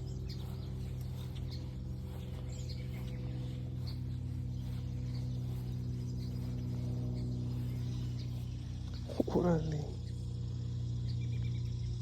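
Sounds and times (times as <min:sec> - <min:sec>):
small birds chirping: 0:00.0 - 0:12.0
steady low hum: 0:00.0 - 0:12.0.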